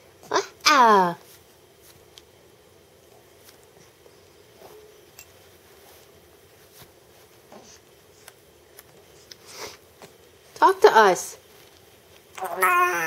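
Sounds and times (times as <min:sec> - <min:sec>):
baby cooing: 0:12.4 - 0:13.0.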